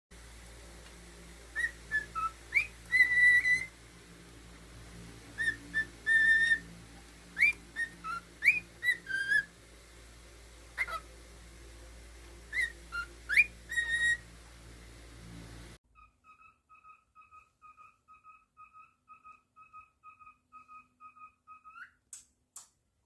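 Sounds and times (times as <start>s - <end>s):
cockatiel whistling: 1.5s - 3.7s, 5.4s - 6.7s, 7.4s - 9.5s, 10.8s - 11.0s, 12.5s - 14.2s, 16.0s - 22.0s.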